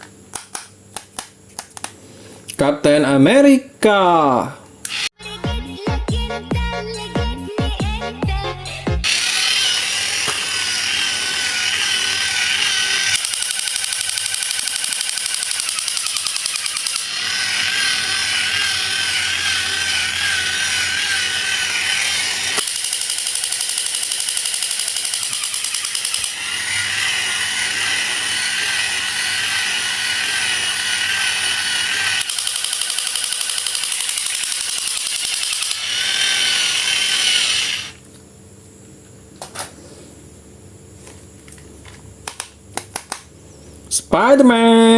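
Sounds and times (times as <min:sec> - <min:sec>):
motor whirring and grinding: 0:04.8 - 0:05.2, 0:09.0 - 0:38.0.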